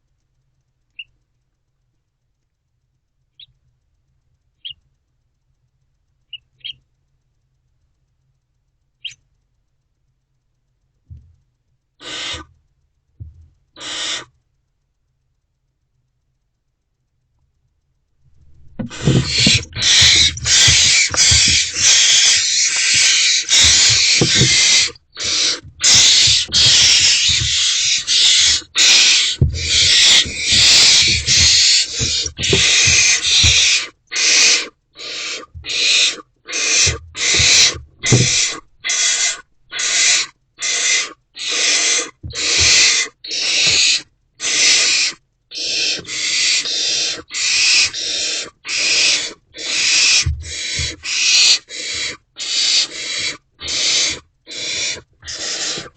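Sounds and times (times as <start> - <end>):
owlets hissing: 12.0 - 12.5, 13.8 - 14.3, 18.5 - 40.2, 40.8 - 55.9
low bumps of chicks moving: 18.3 - 33.9.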